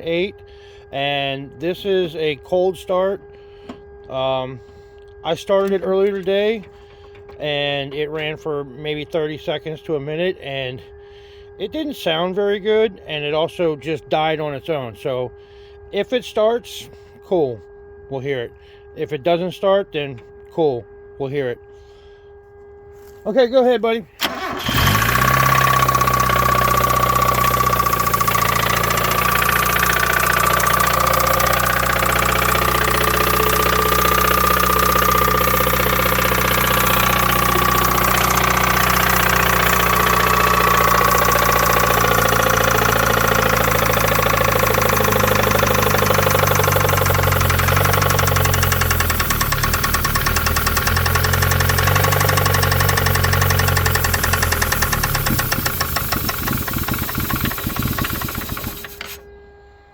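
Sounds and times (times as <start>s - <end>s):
car engine idling with knock: 5.6s - 7.4s, 24.2s - 59.2s.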